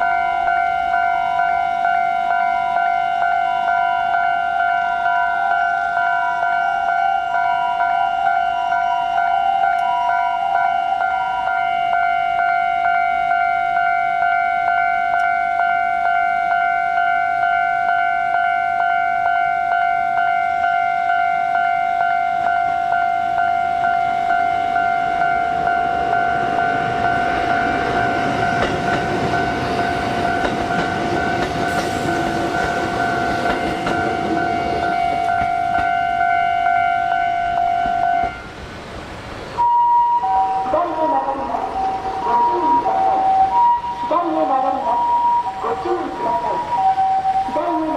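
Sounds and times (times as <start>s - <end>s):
level-crossing warning alarm: 0.0s - 38.5s, 39.6s - 47.9s
electric train rumbling over rails: 0.0s - 47.9s.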